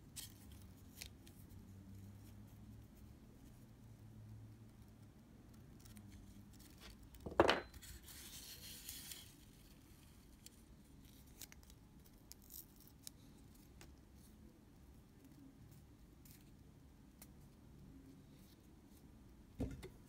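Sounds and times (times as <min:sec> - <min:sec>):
knock on workbench: 0:07.3 - 0:07.7.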